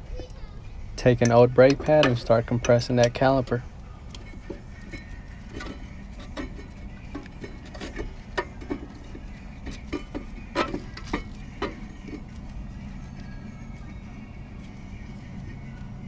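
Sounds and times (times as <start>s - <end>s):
metal tools clinking on brake caliper: 1.0s - 14.8s.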